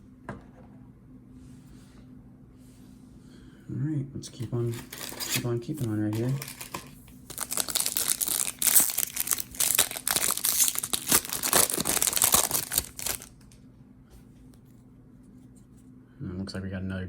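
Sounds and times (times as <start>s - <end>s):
foil wrapper tearing and crinkling: 4.6s - 13.5s.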